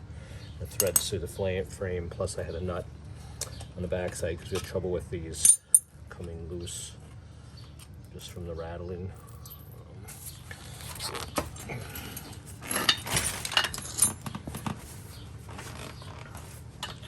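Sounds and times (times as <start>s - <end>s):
metal parts clanking on frame: 0.7s - 1.2s, 10.9s - 14.8s.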